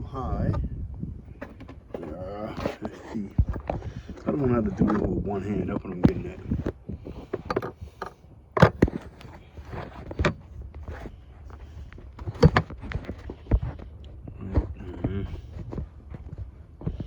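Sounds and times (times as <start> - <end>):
low steady hum: 0.0 - 17.0
phone handling knocks and rubbing: 1.3 - 13.9.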